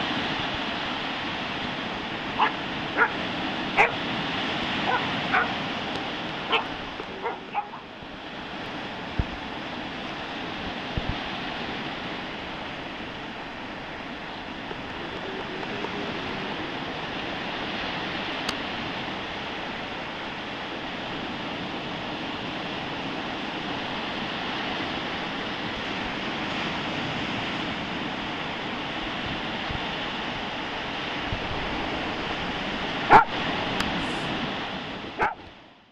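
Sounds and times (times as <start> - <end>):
stormy sea waves: 0.0 - 35.9
wind: 0.0 - 35.9
dog yipping and barking: 2.4 - 3.2, 3.8 - 4.0, 4.9 - 5.6, 6.5 - 7.9, 33.1 - 33.4, 35.2 - 35.4.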